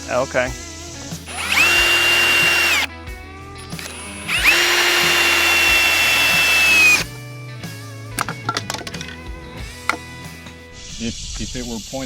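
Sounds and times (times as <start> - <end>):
cordless drill driving screw into wood: 1.3 - 2.9, 3.7 - 7.1.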